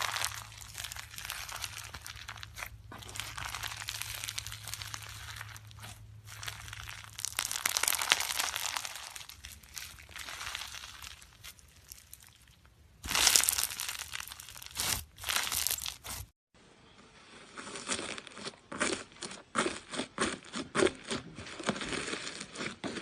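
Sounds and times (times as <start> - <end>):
slime squeezed by hand crackling: 0.0 - 16.3.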